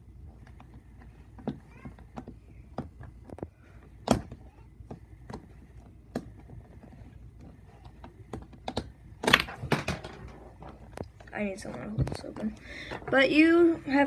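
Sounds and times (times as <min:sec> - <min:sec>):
plastic puzzle pieces clicking: 0:06.1 - 0:10.2.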